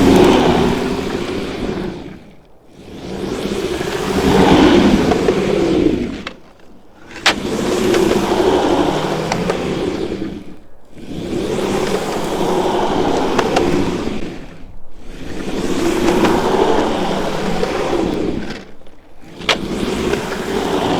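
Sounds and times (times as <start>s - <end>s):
skateboard wheels rolling: 0.0s - 20.9s.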